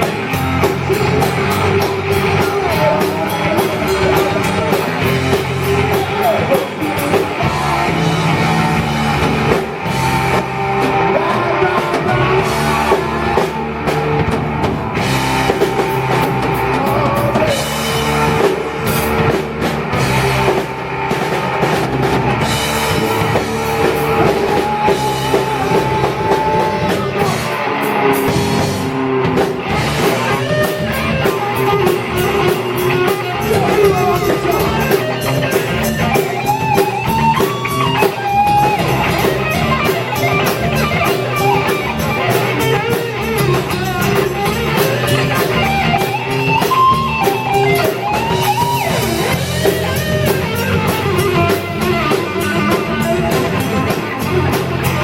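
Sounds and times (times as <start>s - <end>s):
rock band playing live: 0.0s - 55.0s.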